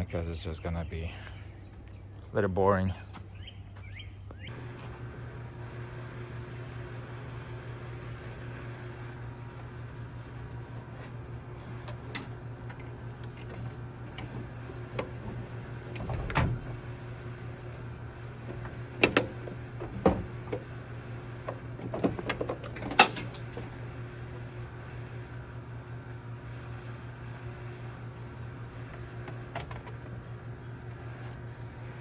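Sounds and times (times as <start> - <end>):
steady low hum: 0.0 - 32.0
metal tools clinking: 22.3 - 23.8.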